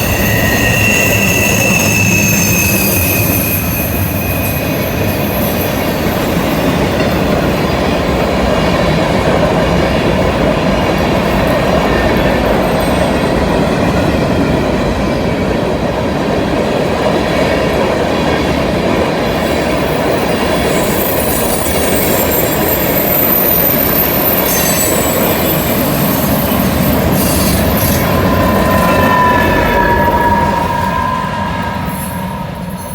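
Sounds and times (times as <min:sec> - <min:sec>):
high-pitched wheel squeal: 0:00.0 - 0:05.9, 0:19.4 - 0:32.9
steel wheels rumbling on rail: 0:00.0 - 0:32.9.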